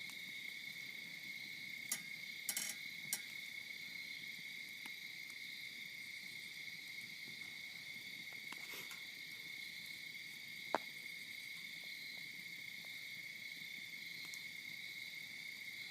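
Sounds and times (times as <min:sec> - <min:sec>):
insects droning: 0:00.0 - 0:15.9.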